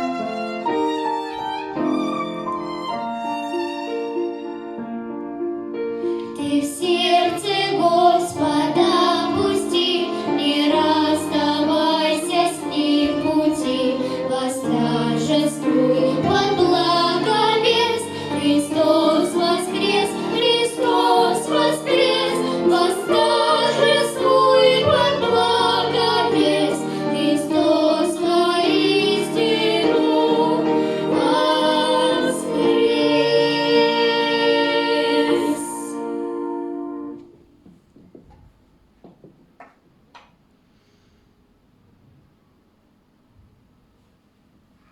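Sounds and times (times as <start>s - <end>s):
instrumental backing music: 0.0s - 37.6s
girls singing pop song: 6.4s - 37.0s.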